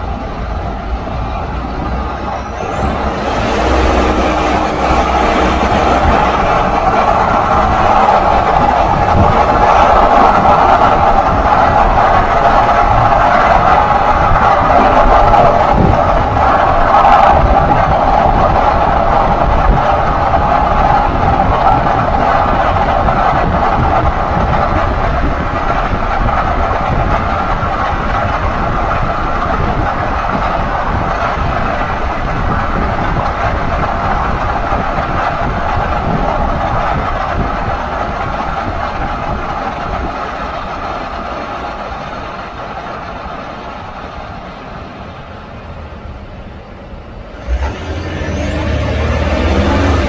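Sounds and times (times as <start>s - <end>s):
pickup truck driving drone: 0.0s - 39.0s, 47.3s - 50.0s.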